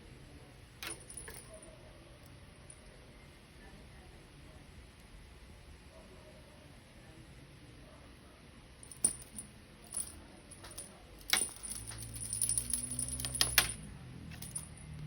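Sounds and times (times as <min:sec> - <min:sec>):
cat toy jingling and clicking: 0:08.9 - 0:15.0.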